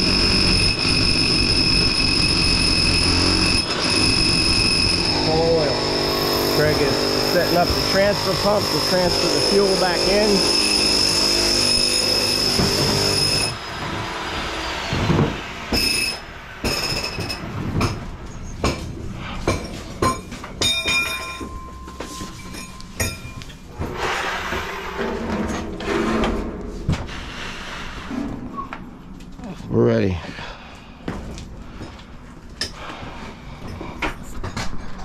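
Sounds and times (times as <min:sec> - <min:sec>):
motor whining and winding down: 0:00.0 - 0:16.2.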